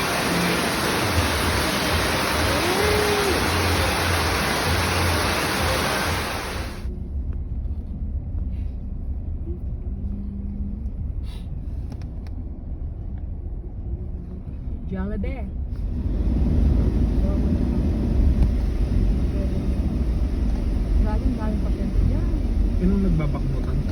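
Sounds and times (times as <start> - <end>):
loud even hiss: 0.0 - 6.9
vehicle rumble: 0.0 - 23.9.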